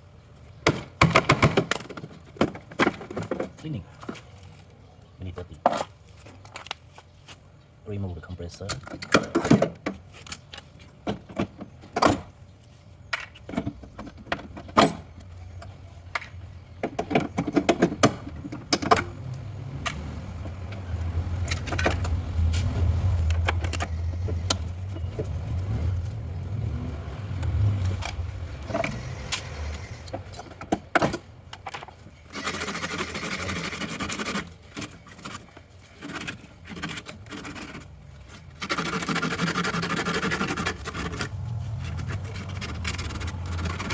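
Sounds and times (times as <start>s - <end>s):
metal parts clinking and scraping: 31.6s - 43.9s.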